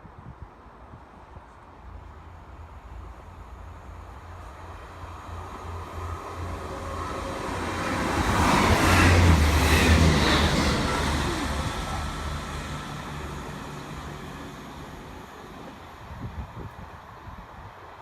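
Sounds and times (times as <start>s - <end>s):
diesel train passing: 1.8s - 18.0s.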